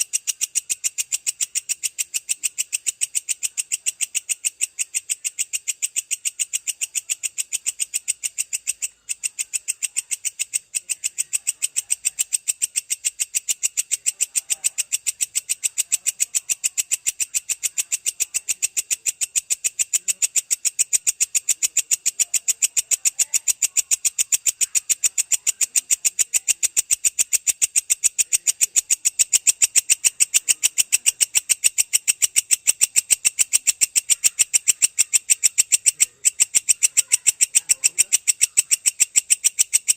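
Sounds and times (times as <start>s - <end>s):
grasshopper ticking call: 0.0s - 39.9s.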